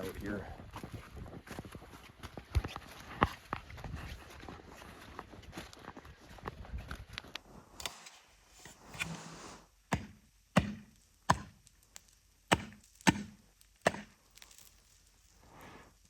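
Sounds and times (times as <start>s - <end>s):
tool chopping ice: 9.9s - 11.6s, 12.5s - 14.2s.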